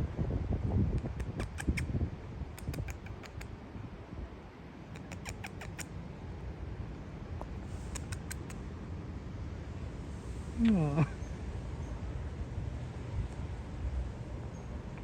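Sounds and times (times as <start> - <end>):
wind rumble on microphone: 0.0 - 15.0
small animal high chirps: 1.2 - 1.9, 2.6 - 3.5, 5.0 - 5.9, 7.8 - 8.6.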